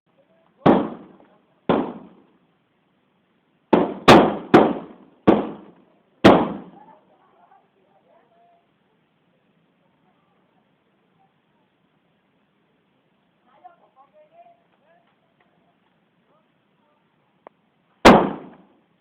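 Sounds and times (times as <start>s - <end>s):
firecrackers banging: 0.6s - 2.3s, 3.7s - 6.9s, 18.0s - 18.7s.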